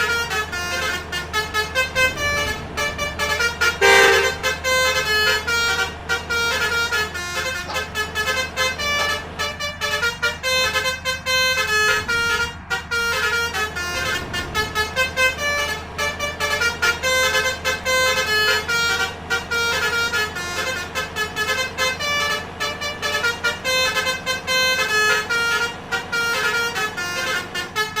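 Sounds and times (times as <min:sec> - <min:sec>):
low hum: 0:00.0 - 0:27.5
musical air horn melody: 0:00.0 - 0:28.0.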